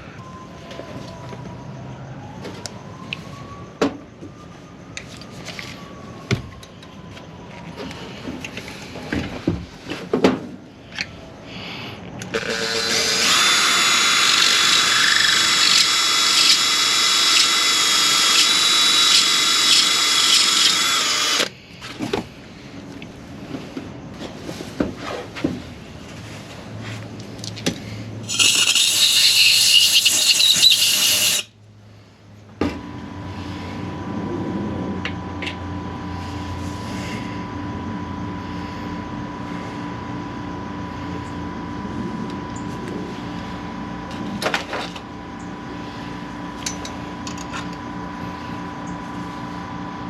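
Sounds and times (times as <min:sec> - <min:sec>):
electric drill whining: 0:12.2 - 0:21.6, 0:28.2 - 0:31.5.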